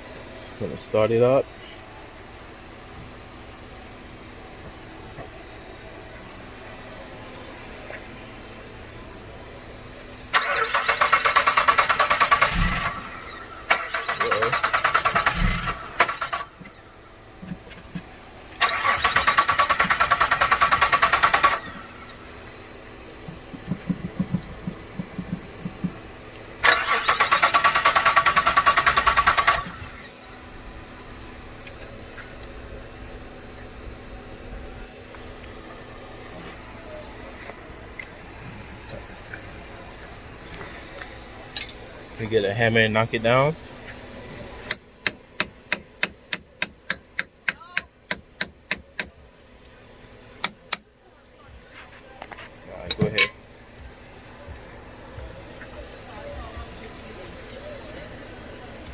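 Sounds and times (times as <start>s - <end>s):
engine cranking by starter: 10.2s - 22.3s, 23.4s - 30.2s.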